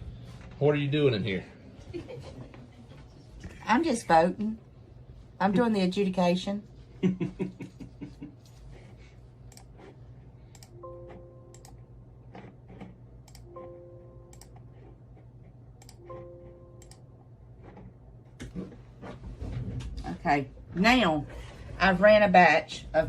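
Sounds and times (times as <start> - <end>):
electrical hum: 0.0 - 23.0
electronic alert tone: 10.6 - 11.7.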